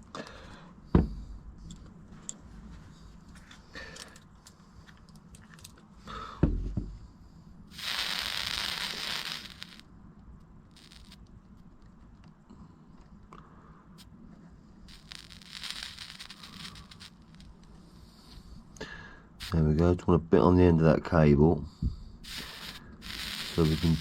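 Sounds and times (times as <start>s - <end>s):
thump: 0.9s - 1.2s, 6.4s - 7.0s
flux sizzling under soldering iron: 7.7s - 9.8s, 10.7s - 11.2s, 14.9s - 18.4s, 19.4s - 19.6s, 22.2s - 24.0s.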